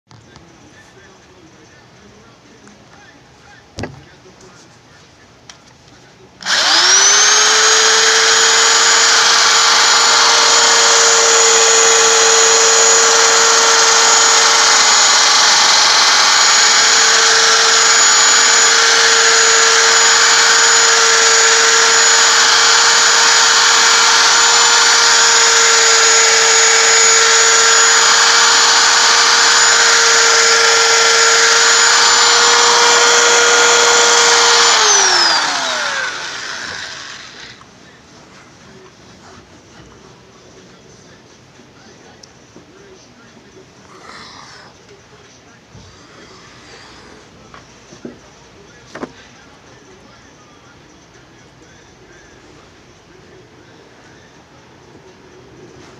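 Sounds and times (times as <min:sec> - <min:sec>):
electric polisher whining: 0:06.4 - 0:37.6.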